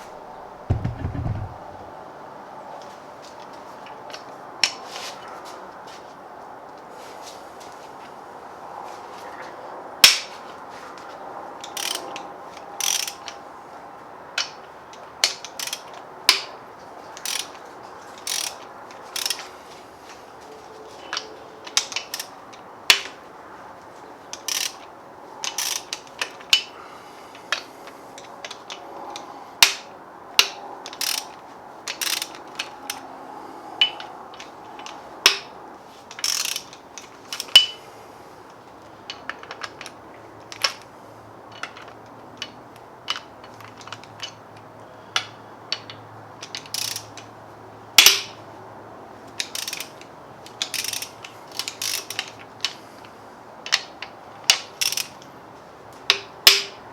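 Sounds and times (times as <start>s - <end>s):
ratchet wrench clicking: 11.8s - 12.0s, 12.8s - 13.2s, 15.5s - 16.4s, 17.2s - 17.5s, 18.2s - 18.6s, 19.2s - 19.4s, 24.4s - 24.8s, 25.4s - 25.9s, 30.4s - 32.7s, 36.2s - 37.7s, 46.4s - 47.2s, 49.4s - 50.0s, 50.6s - 52.4s, 54.5s - 55.2s.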